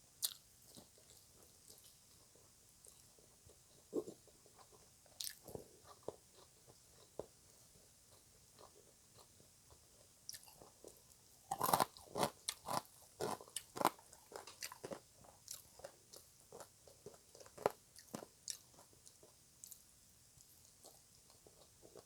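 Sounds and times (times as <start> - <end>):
crunchy chewing: 0.2 - 22.0.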